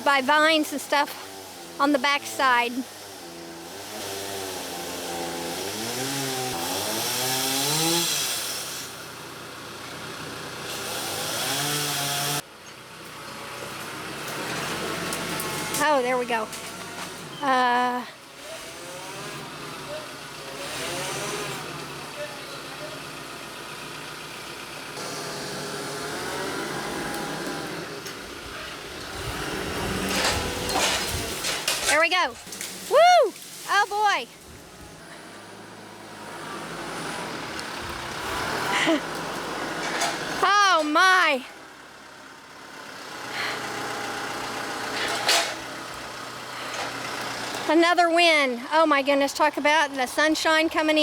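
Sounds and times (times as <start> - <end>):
tractor diesel engine running: 0.0 - 3.8, 8.6 - 11.6, 12.4 - 51.0
chainsaw cutting wood: 0.3 - 9.0, 10.5 - 12.5, 14.3 - 17.3, 18.4 - 22.2, 25.0 - 28.4, 29.0 - 34.2, 35.5 - 40.8, 43.2 - 47.7.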